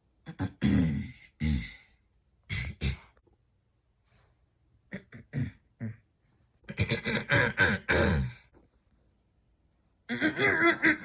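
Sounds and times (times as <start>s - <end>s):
person clearing throat: 0.2s - 1.8s, 2.5s - 3.2s, 4.9s - 6.1s, 6.7s - 8.4s
person coughing: 0.3s - 1.8s, 2.5s - 3.2s, 4.9s - 6.0s, 6.7s - 8.4s.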